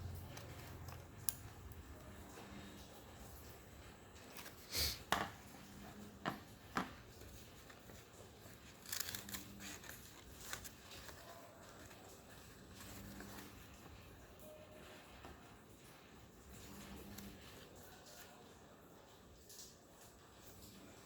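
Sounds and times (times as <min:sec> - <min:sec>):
paper rustling and crinkling: 0:03.8 - 0:18.5.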